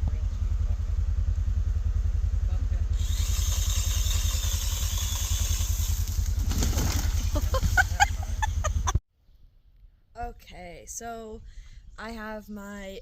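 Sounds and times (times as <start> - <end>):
engine throbbing: 0.0 - 9.0.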